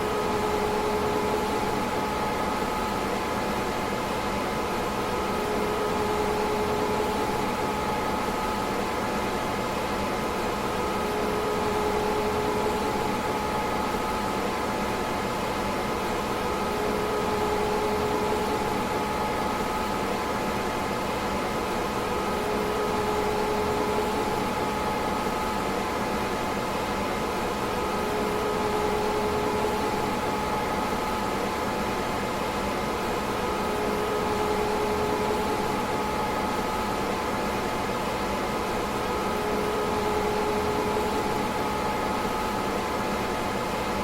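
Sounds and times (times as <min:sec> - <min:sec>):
computer whirring hum: 0:00.0 - 0:44.0.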